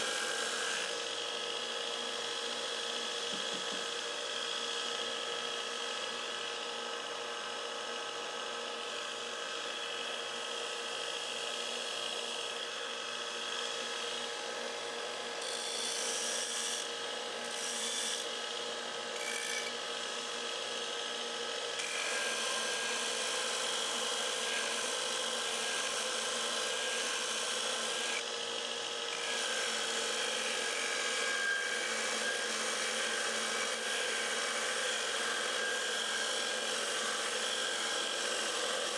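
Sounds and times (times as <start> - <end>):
grinder grinding steel blade: 15.4 - 20.1, 21.8 - 28.2, 29.1 - 38.9.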